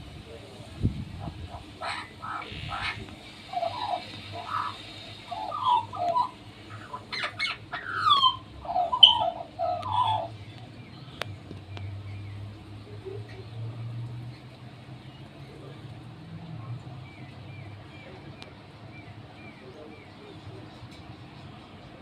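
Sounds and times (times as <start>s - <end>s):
bird singing warbling notes: 1.2s - 13.6s.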